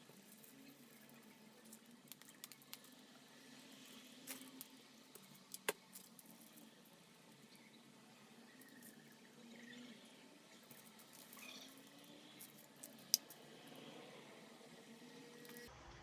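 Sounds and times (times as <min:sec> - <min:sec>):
small objects clicking: 0:00.1 - 0:03.0, 0:04.3 - 0:06.7, 0:10.6 - 0:13.6.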